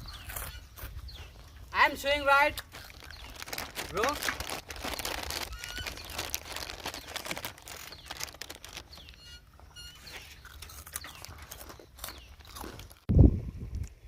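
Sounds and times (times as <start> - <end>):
bird chirps: 0.0 - 1.8, 4.9 - 12.8
crunching and crackling clicks: 2.5 - 13.1.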